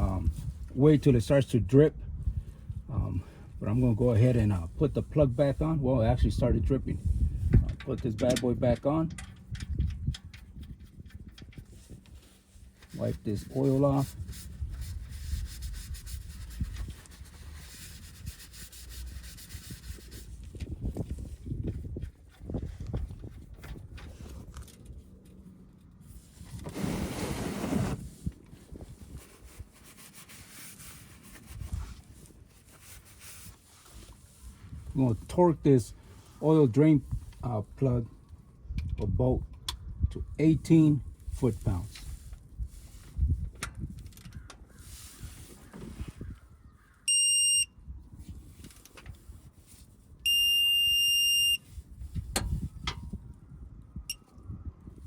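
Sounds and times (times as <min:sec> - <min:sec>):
torque wrench beeping: 0:47.1 - 0:47.7, 0:50.3 - 0:51.6.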